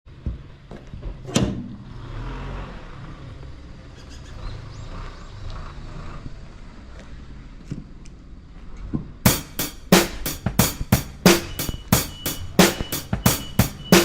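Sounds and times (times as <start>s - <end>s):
excavator diesel engine running: 10.8s - 14.0s.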